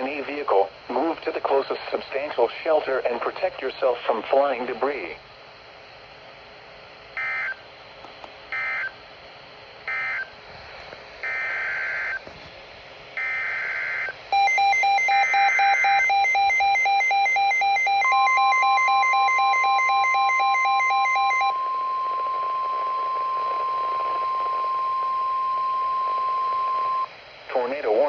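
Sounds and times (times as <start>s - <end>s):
pulsing two-tone electronic alarm: 7.2s - 7.6s, 8.6s - 8.9s, 9.9s - 10.3s, 11.2s - 12.2s, 13.2s - 27.1s
steady warning tone: 9.9s - 10.4s, 13.2s - 28.0s
warbling data tone bursts: 13.2s - 27.1s.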